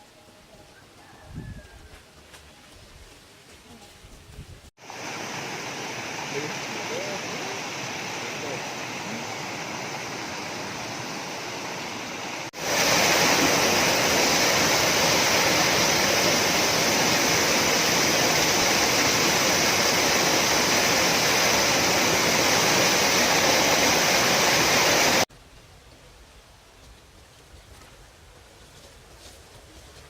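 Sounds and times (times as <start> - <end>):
rushing water: 4.8 - 25.3.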